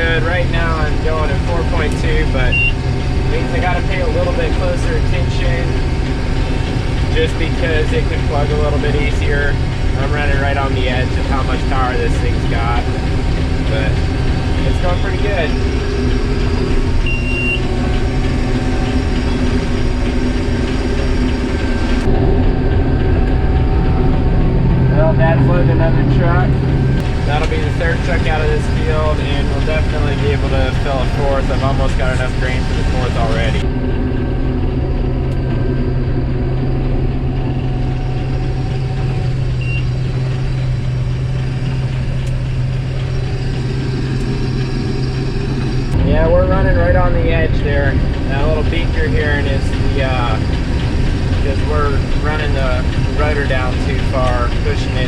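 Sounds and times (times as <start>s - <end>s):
combine harvester running: 0.0s - 55.0s
short high beep: 2.5s - 2.8s, 17.0s - 17.7s.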